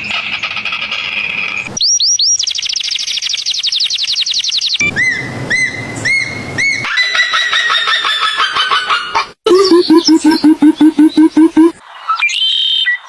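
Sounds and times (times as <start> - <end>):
arched bird whistles: 1.8 - 7.2, 12.0 - 13.0.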